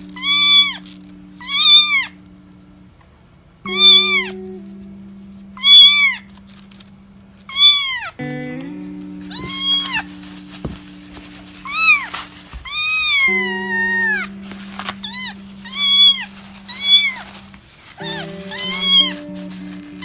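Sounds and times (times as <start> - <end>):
background music with low notes: 0.0 - 2.9, 3.7 - 6.7, 8.2 - 20.0
kitten meowing: 0.2 - 0.8, 1.4 - 2.2, 3.7 - 4.4, 5.6 - 6.3, 7.5 - 8.2, 9.3 - 10.1, 11.6 - 14.3, 15.0 - 17.2, 18.0 - 19.2.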